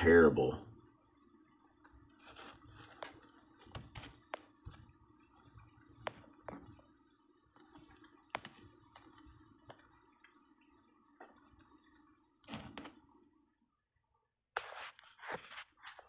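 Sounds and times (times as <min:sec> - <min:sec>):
low steady hum: 0:00.0 - 0:16.0
faint clicks and ticks: 0:00.6 - 0:13.2.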